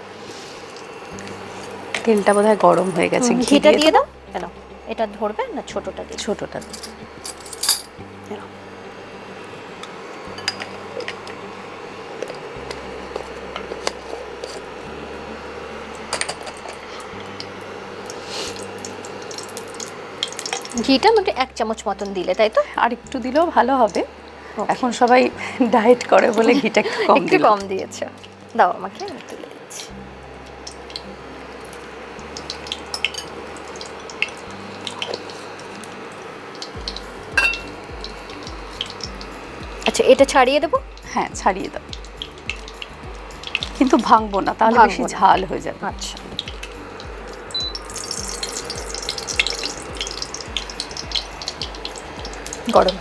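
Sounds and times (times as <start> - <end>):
oil hissing in a pan: 0.0 - 7.2, 7.9 - 53.0
low background hum: 0.0 - 53.0
utensils clinking against pots: 0.6 - 4.0, 6.3 - 8.0, 9.8 - 11.4, 16.1 - 17.1, 32.7 - 35.8, 36.6 - 53.0.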